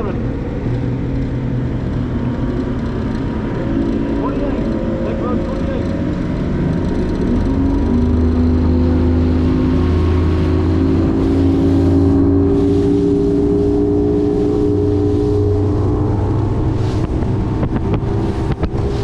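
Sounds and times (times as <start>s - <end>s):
outboard motor running: 0.0s - 19.0s.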